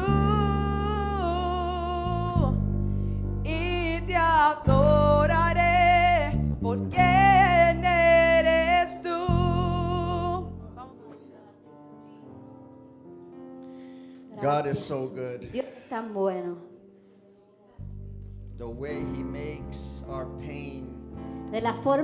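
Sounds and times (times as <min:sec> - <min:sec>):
person singing with vibrato: 0:00.0 - 0:02.7, 0:03.5 - 0:11.2
sustained bass and chords: 0:00.0 - 0:10.8, 0:17.9 - 0:21.7.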